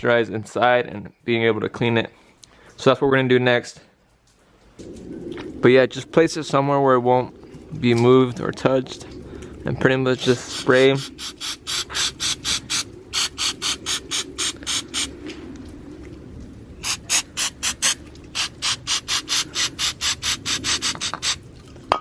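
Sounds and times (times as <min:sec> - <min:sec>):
aerosol spray squirts: 0:10.2 - 0:15.1, 0:16.8 - 0:21.4.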